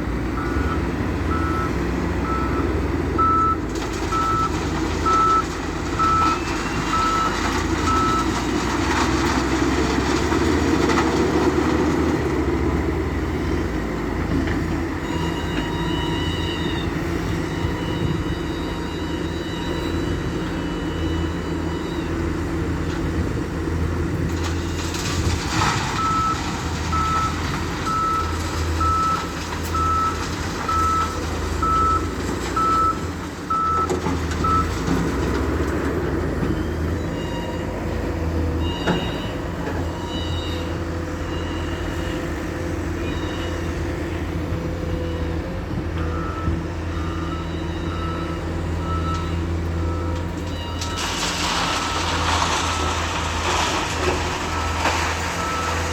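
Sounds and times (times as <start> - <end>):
diesel machinery running: 0.0 - 55.9
reversing alarm beeping: 0.4 - 8.4, 15.0 - 22.4, 25.9 - 34.8, 36.4 - 37.9, 38.5 - 43.8, 46.0 - 53.0.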